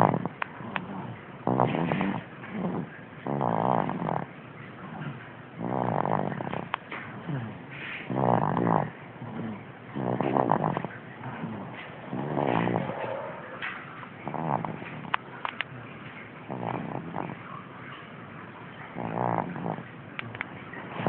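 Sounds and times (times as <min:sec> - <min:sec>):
baby snoring: 0:00.0 - 0:04.3, 0:05.6 - 0:13.4, 0:14.1 - 0:15.2, 0:16.5 - 0:17.4, 0:19.0 - 0:19.8.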